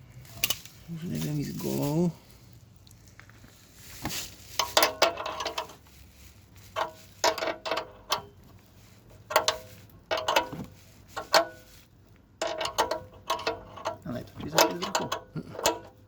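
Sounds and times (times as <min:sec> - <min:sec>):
hand tools ratcheting on metal: 0:04.6 - 0:05.8, 0:09.2 - 0:10.6, 0:12.4 - 0:16.0.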